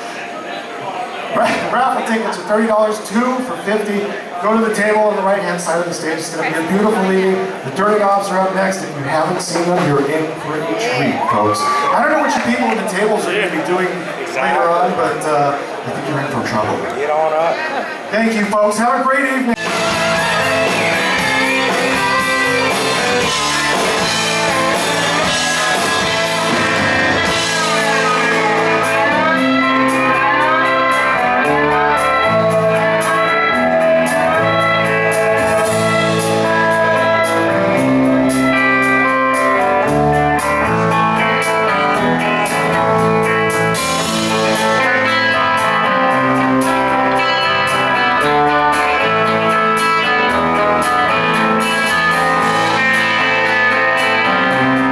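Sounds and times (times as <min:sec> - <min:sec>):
instrumental guitar rock music: 0:19.6 - 0:54.9.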